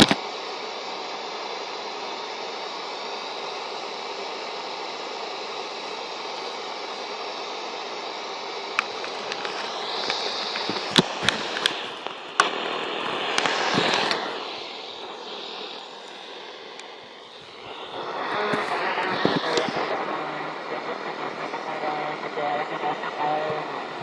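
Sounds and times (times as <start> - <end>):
sharp clicks and crackles: 0.0 - 0.2, 8.7 - 14.4, 18.2 - 19.9
radio static hiss: 0.0 - 24.0
wavering radio whistles: 0.0 - 24.0.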